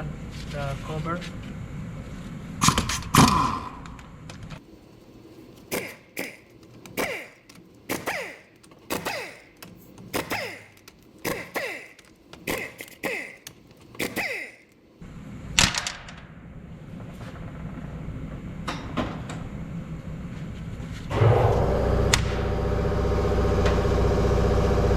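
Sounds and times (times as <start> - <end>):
loud clunk: 21.1 - 22.8
power tool whining: 21.1 - 24.9.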